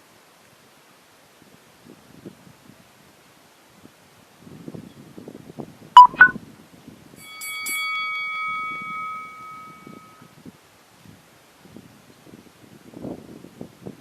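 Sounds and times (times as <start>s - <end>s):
bell-like chime: 7.2s - 10.3s.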